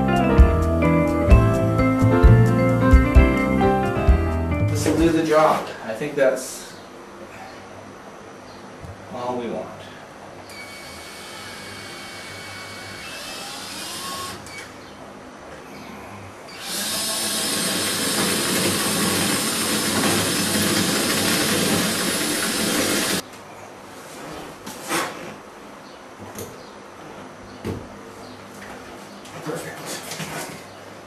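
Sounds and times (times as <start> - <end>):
power drill running: 10.5 - 14.8, 16.5 - 23.2.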